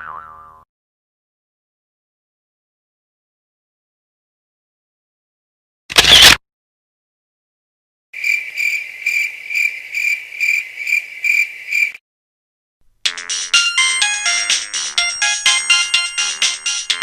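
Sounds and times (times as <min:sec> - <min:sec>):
cricket chirp sound effect: 0:08.2 - 0:12.0
electronic ringtone melody: 0:13.1 - 0:17.0.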